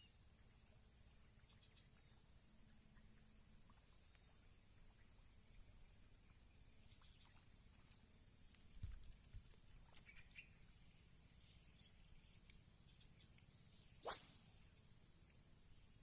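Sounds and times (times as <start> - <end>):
insects buzzing: 0.0 - 16.0
short chirp: 14.0 - 14.9.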